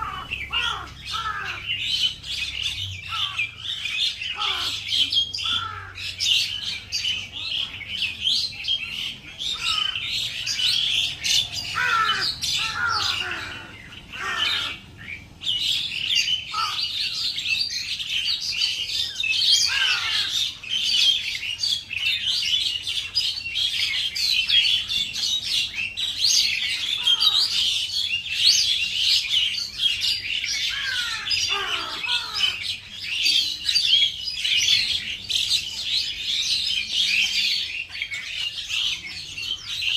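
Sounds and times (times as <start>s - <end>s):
lower falling bird calls: 0.0s - 39.9s
small birds chirping and chattering: 0.0s - 39.9s.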